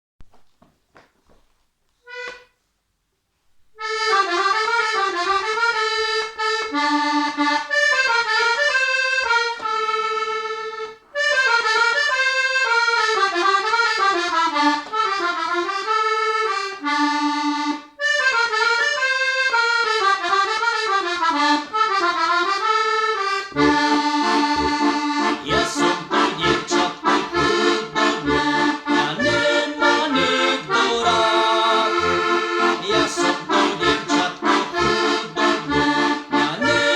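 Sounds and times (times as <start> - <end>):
button accordion folk melody: 2.0 - 2.6, 3.8 - 36.9
bass and chord accompaniment: 23.4 - 36.9.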